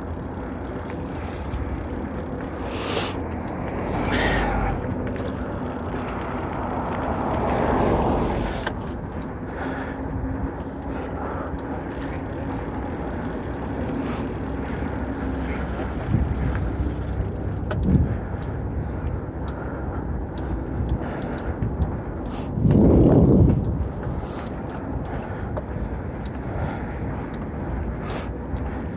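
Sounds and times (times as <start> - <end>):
bike clicks and rattles: 0.0 - 28.9
bike tyre noise: 0.0 - 28.9
faint hum: 0.0 - 28.9
wind rush: 2.5 - 9.2, 20.9 - 24.3.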